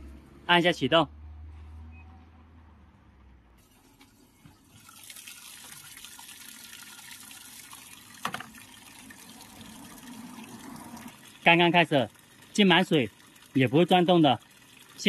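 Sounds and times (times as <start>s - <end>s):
water filling washing machine drum: 4.4s - 15.0s.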